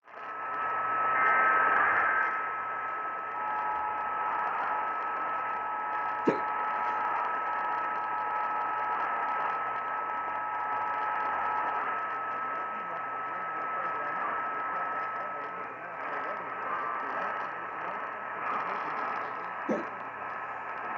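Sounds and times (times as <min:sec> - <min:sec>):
radio static: 0:00.0 - 0:20.9
sharp static crack: 0:00.1 - 0:20.9.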